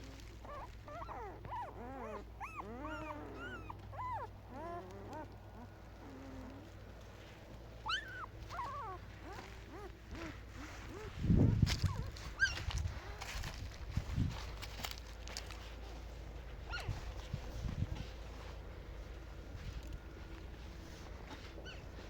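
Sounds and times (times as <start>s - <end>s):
puppies whimpering and whining: 0.0s - 14.2s, 16.6s - 18.2s, 20.2s - 22.0s
puppy yelp: 0.1s - 6.7s, 7.8s - 12.8s, 16.7s - 17.0s, 21.4s - 21.9s.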